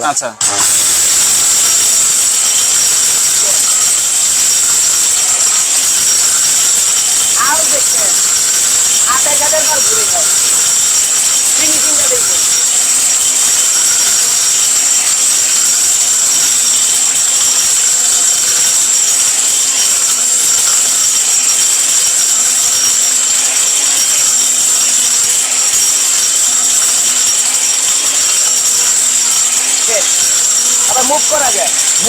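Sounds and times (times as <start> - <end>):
mixer grinder high-pitched whine: 0.0 - 32.0.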